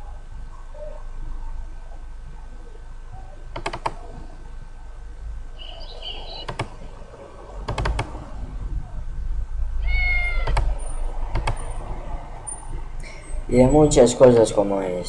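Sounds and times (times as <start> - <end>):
computer mouse clicks: 3.5 - 4.0, 6.4 - 6.7, 7.7 - 8.1, 11.3 - 11.7
high-pitched animal call: 5.6 - 6.6, 9.8 - 10.8
cat meowing: 9.8 - 10.7.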